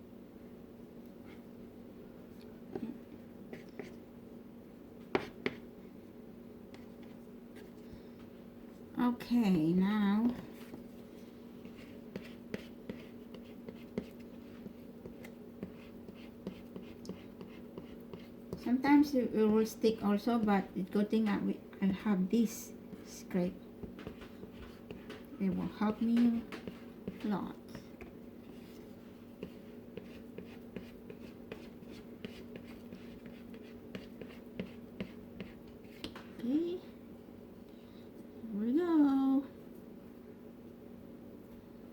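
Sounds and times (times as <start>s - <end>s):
steady low hum: 0.0s - 41.9s
dough scraper tapping and scraping: 11.6s - 18.8s, 23.8s - 28.2s, 29.4s - 36.2s
dough scraper scraping and tapping: 23.8s - 28.2s.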